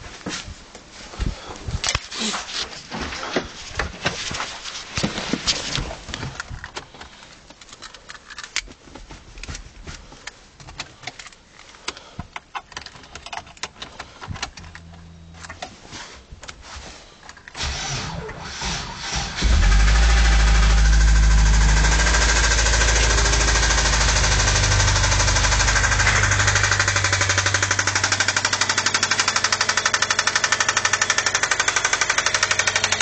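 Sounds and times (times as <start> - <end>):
irregular clicks and rattles: 6.1 - 15.8, 19.5 - 33.0
engine starter cranking: 14.4 - 15.6, 17.6 - 33.0.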